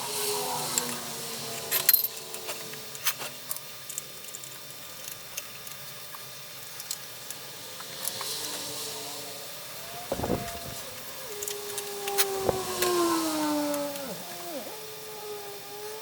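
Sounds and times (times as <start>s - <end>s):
small parts clicking and knocking: 1.6s - 8.7s, 9.8s - 14.6s.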